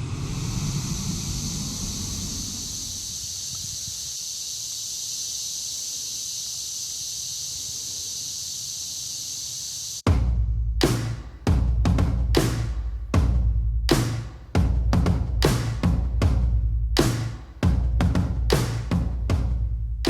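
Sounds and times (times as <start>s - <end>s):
low rumble: 0.0s - 3.7s
cicadas droning: 0.0s - 10.1s.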